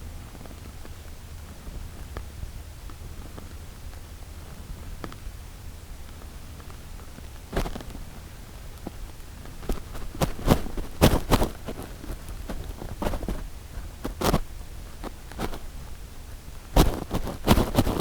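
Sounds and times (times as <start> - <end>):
dog clicks and rustles: 8.8 - 15.9, 16.8 - 18.0.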